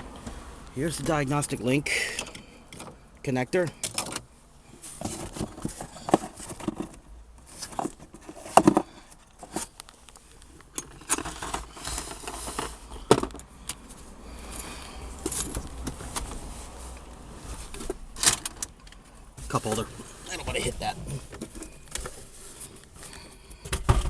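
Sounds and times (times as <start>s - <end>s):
scraping and rustling: 4.0s - 23.7s.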